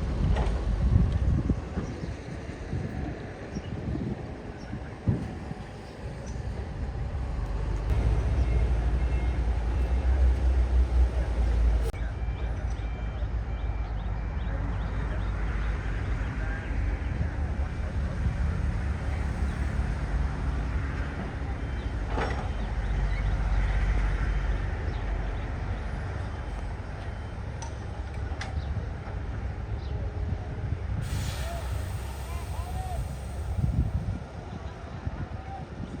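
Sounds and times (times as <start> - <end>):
diesel engine rumbling: 0.0 - 35.3.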